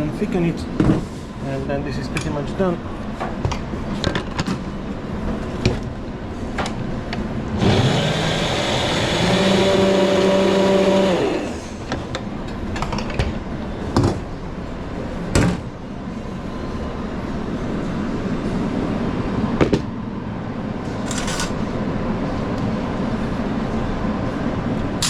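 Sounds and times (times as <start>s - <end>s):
electric blender running: 7.5s - 11.9s.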